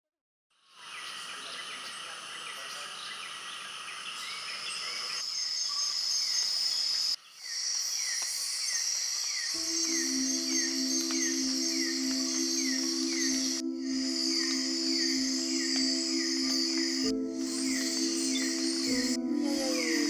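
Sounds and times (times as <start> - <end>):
insects droning: 0.7 - 20.0
soft music with sustained tones: 9.6 - 20.0.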